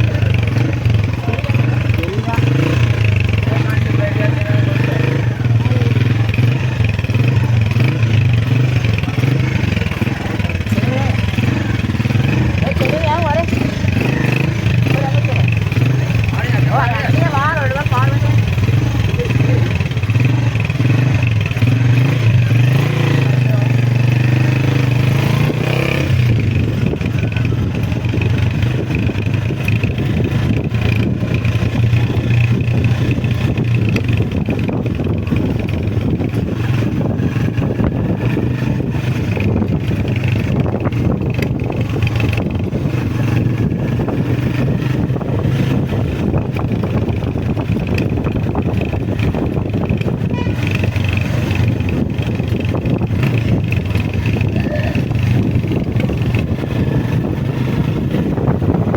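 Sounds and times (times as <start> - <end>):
motorcycle engine running: 0.0 - 58.9
road noise: 0.0 - 58.9.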